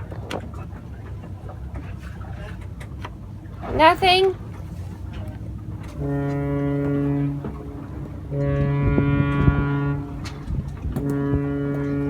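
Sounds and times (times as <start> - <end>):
boat horn blasts: 5.1 - 12.0.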